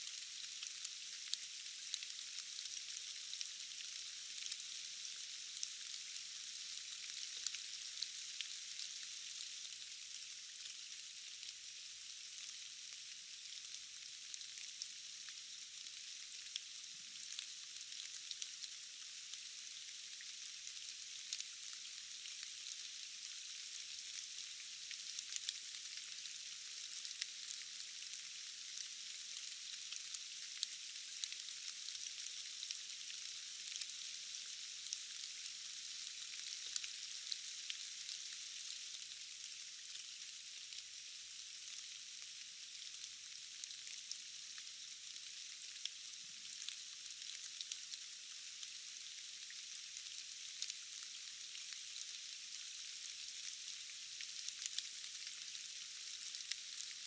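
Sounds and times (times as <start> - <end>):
steady rain hissing: 0.0 - 57.0.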